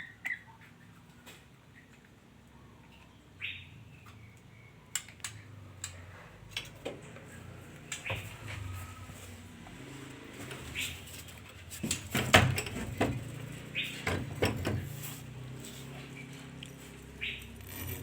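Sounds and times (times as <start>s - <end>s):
bird sharp calls and clicks: 0.0s - 2.2s, 2.8s - 8.8s, 10.4s - 12.0s, 13.4s - 14.2s, 16.0s - 18.0s.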